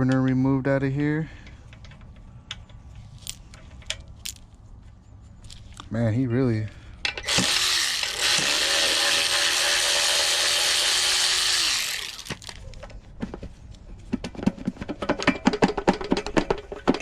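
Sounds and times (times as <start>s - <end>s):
power tool running: 7.2s - 12.5s.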